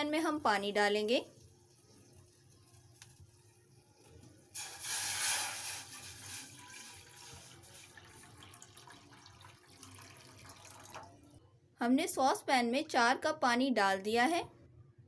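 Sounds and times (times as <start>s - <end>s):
water pouring into a saucepan: 0.6s - 11.3s.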